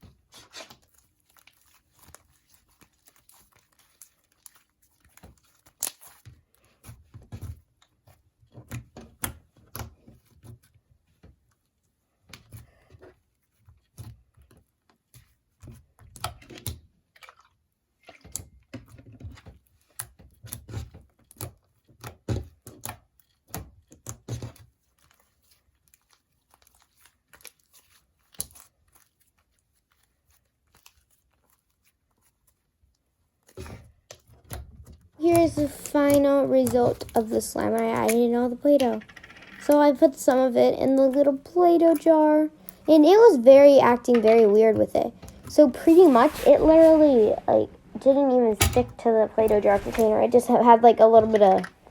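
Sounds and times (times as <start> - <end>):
slime crackling and popping: 0.8 - 6.5.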